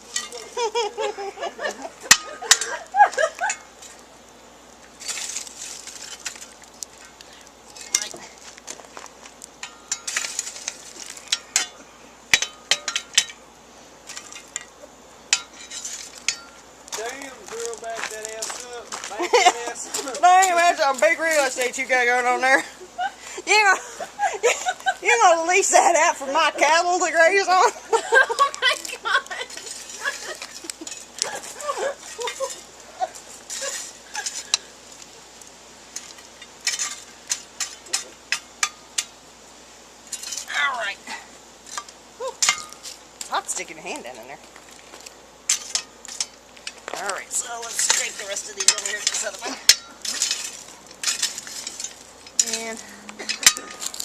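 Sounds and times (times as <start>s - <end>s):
metal tools scraping charcoal: 0.0s - 54.0s
metal cooking gear clinking: 47.0s - 54.0s.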